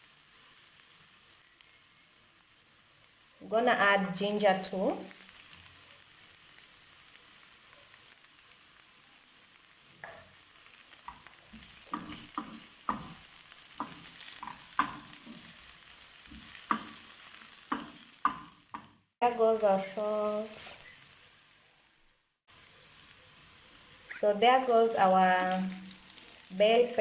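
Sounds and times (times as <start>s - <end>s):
onions sizzling in hot oil: 0.0s - 27.0s
utensil knocking against pan: 13.8s - 15.0s, 16.7s - 17.0s, 17.7s - 19.0s.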